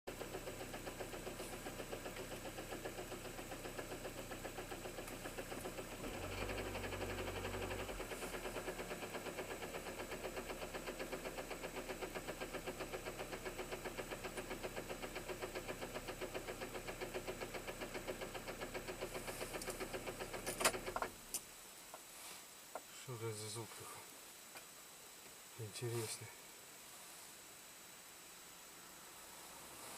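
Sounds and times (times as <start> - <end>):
car engine knocking: 0.1 - 21.2.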